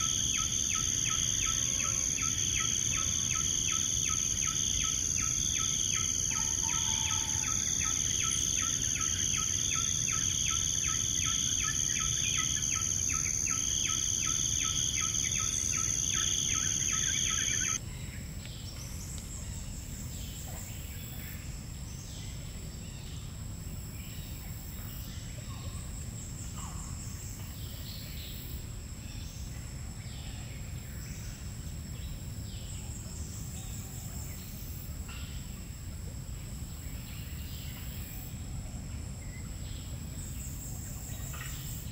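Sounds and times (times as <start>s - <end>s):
bird chirps: 0.0s - 17.8s
high insect tone: 0.0s - 17.8s
insect chorus drone: 0.0s - 41.9s.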